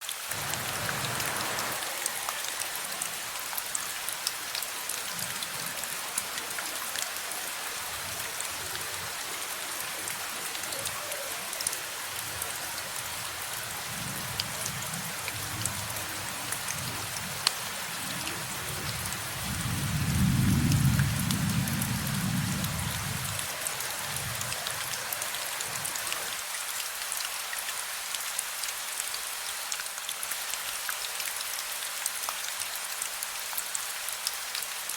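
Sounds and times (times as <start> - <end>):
raindrops ticking: 0.0 - 19.2
steady rain: 0.0 - 34.9
low thunder rumble: 18.6 - 23.5.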